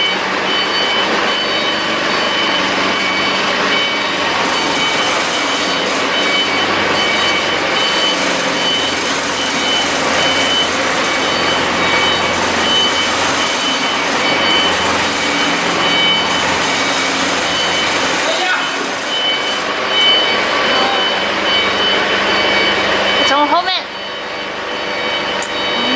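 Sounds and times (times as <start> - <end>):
diesel generator engine running: 0.0 - 25.9.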